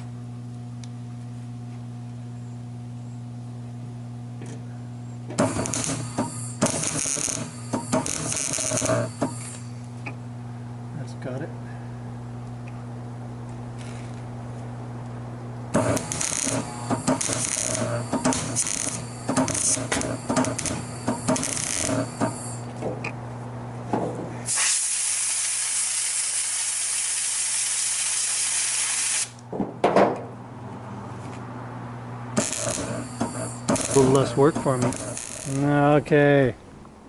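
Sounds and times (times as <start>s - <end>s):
low steady hum: 0.0s - 24.5s
spray hiss: 24.5s - 29.3s
knocks: 29.5s - 30.3s.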